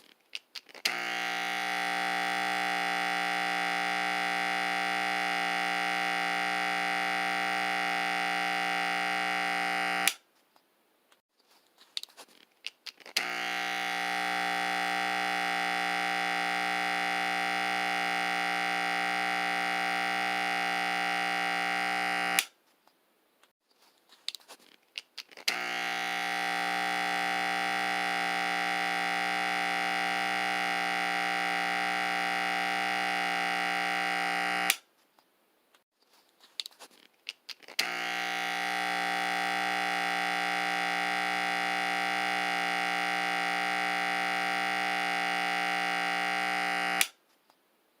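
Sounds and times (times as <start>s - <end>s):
electric clippers buzzing: 0.8s - 10.2s, 13.1s - 22.5s, 25.4s - 34.8s, 37.7s - 47.2s.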